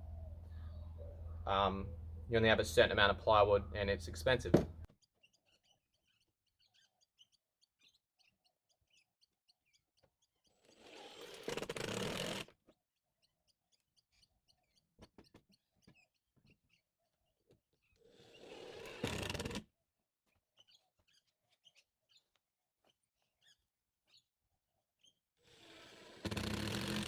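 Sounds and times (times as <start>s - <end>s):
faint bird chirps: 0.0s - 2.2s.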